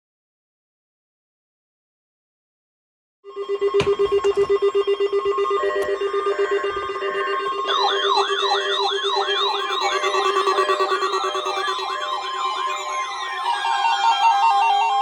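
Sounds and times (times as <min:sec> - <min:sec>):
low pulsing alarm tone: 0:03.3 - 0:15.0
warbling siren tone: 0:03.3 - 0:15.0.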